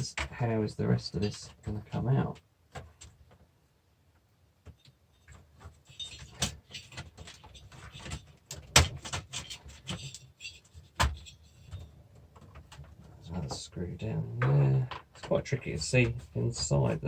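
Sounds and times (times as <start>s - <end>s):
dvd player parts clicking and rattling: 5.3s - 13.0s.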